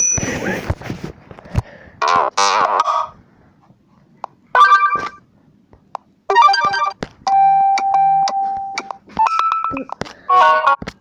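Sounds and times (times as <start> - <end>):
phone notification tones: 6.3 - 9.9.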